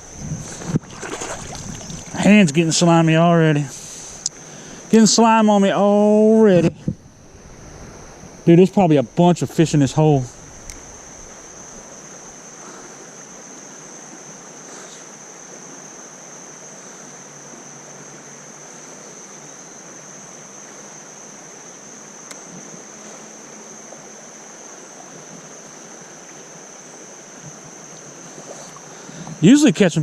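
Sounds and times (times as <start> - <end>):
creek water over rocks: 0.0 - 5.4, 19.8 - 30.0
high insect drone: 0.0 - 30.0.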